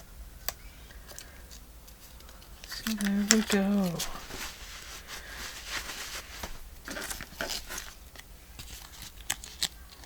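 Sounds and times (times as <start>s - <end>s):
paper rustling: 0.9s - 10.0s.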